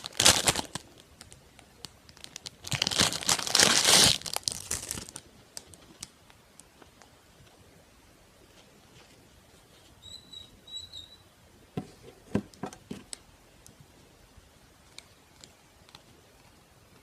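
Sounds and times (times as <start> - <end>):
packaging crinkling: 0.0 - 6.2.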